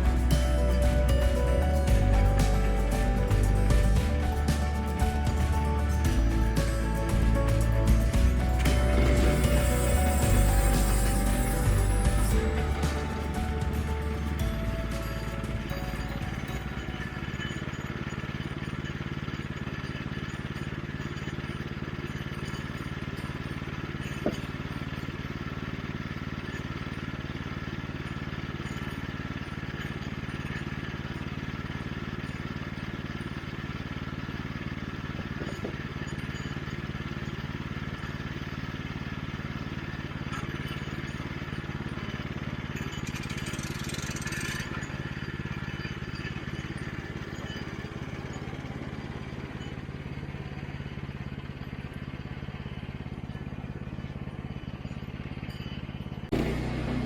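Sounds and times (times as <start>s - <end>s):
small gasoline engine running: 0.0s - 57.0s.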